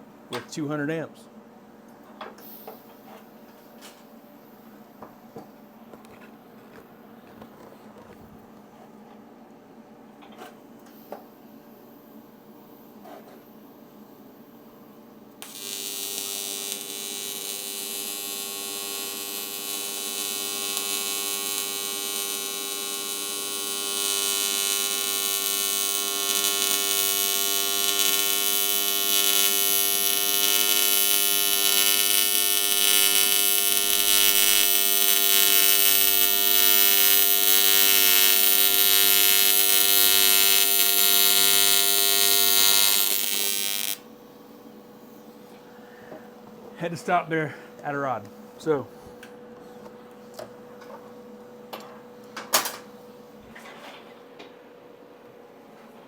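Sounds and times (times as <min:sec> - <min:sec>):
welding arc buzzing: 0:15.4 - 0:44.1.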